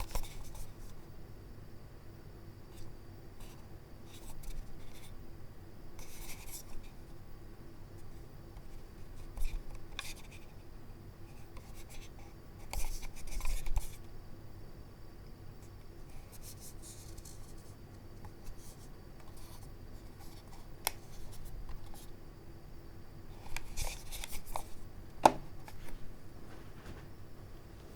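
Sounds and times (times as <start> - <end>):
mouse scraping and rubbing: 16.1 - 17.8.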